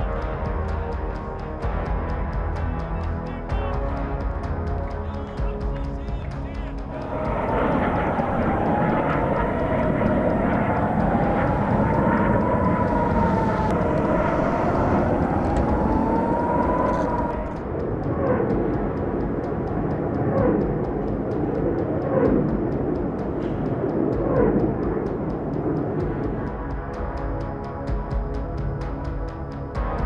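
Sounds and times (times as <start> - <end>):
siren wailing: 7.0 - 17.6
steady rumble: 7.0 - 17.6.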